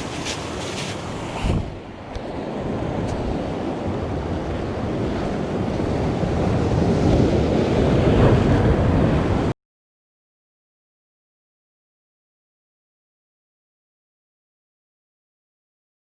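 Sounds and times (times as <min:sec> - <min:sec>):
surf washing on shore: 0:00.0 - 0:09.5
wind buffeting microphone: 0:00.0 - 0:09.5.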